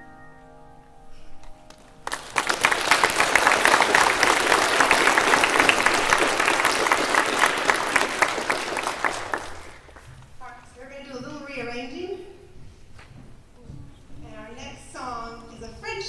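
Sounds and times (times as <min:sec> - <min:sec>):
audience applause: 0:01.8 - 0:10.2.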